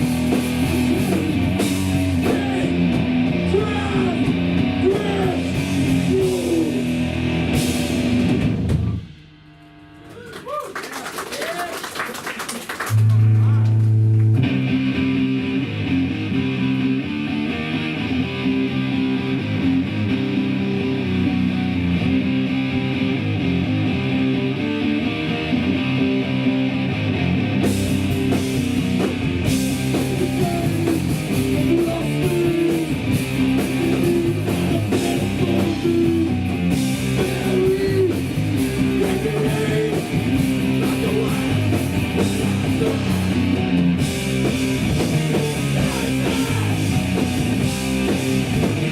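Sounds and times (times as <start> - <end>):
drums and cymbals: 0.0 - 9.4, 27.6 - 48.9
electric guitar riffing: 0.0 - 10.2, 12.9 - 48.9
punk band playing live: 0.0 - 10.2, 11.9 - 48.9.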